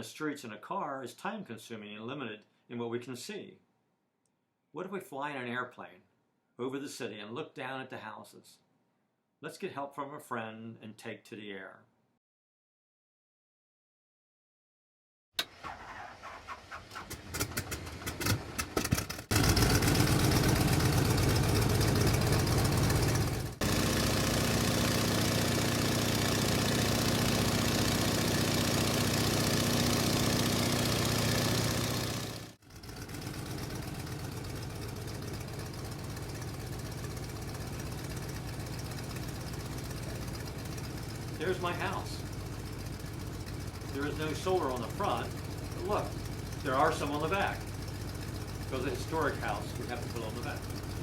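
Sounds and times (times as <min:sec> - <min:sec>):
airplane engine running: 0:19.3 - 0:51.0
airplane piston engine cranking: 0:41.4 - 0:51.0.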